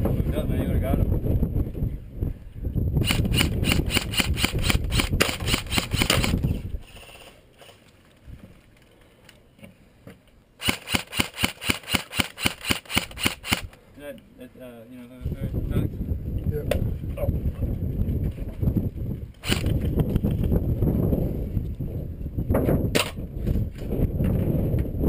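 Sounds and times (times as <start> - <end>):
airsoft gun rapid shots: 3.0 - 6.4, 10.6 - 13.7, 19.4 - 19.7.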